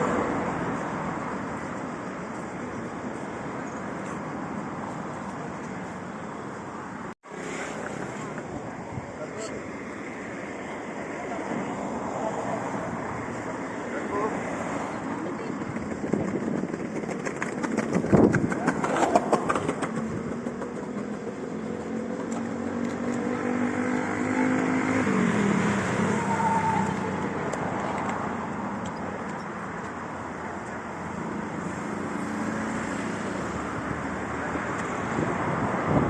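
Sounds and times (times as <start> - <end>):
road noise: 0.0 - 36.0
vehicle engine passing by: 13.9 - 28.0, 31.4 - 36.0.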